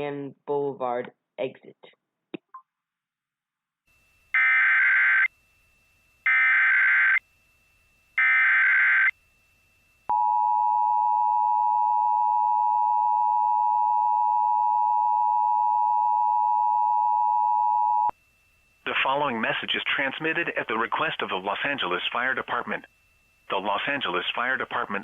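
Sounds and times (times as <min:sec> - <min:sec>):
screeching digital data bursts: 0:06.3 - 0:07.2.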